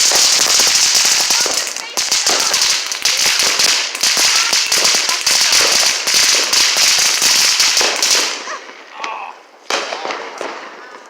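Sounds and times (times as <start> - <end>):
firework hissing and crackling: 0.0 - 8.9.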